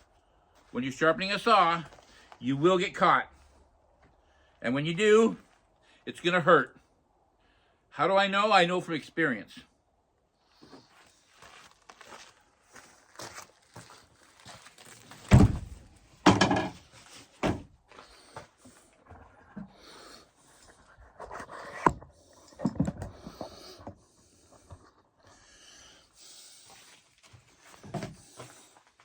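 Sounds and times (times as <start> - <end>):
rustling of gear: 10.7 - 16.2.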